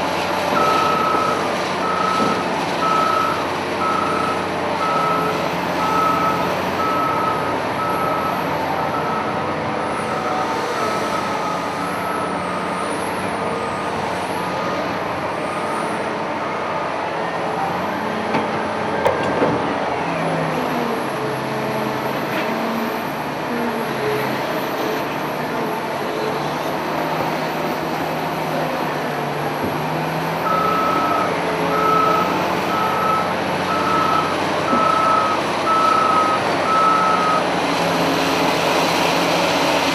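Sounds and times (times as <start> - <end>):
diesel engine under varying load: 0.0 - 39.9
reversing alarm beeping: 0.5 - 9.4, 30.4 - 37.5.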